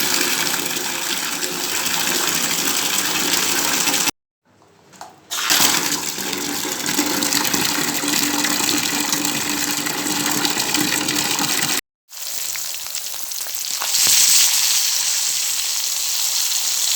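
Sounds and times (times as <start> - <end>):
water gushing: 0.0 - 4.1, 5.3 - 12.4.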